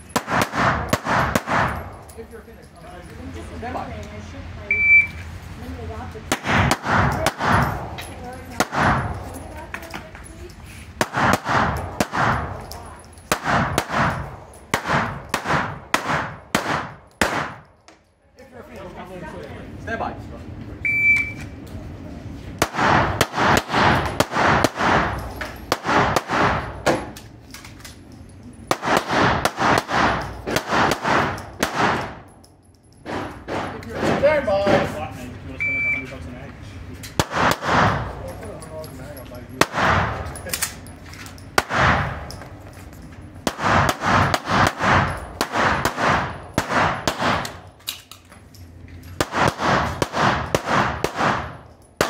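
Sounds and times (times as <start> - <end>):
pistol shots: 0.0 - 2.1, 6.3 - 9.2, 11.0 - 12.6, 13.2 - 17.7, 22.6 - 27.2, 28.7 - 32.3, 33.1 - 34.9, 37.2 - 38.2, 39.6 - 40.8, 41.6 - 42.3, 43.4 - 47.7, 49.2 - 52.0.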